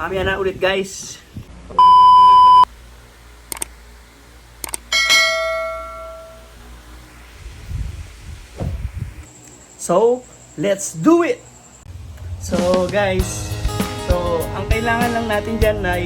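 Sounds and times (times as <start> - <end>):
loud steady beep: 1.8 - 2.7
short clicks: 3.5 - 3.8, 4.6 - 4.9
bell-like ding: 5.0 - 6.5.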